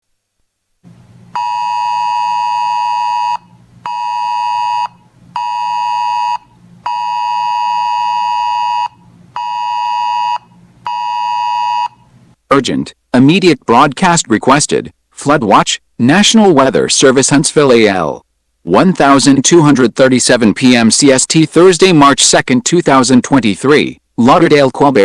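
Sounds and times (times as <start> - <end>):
weather radio alert beeps: 1.4 - 12.0.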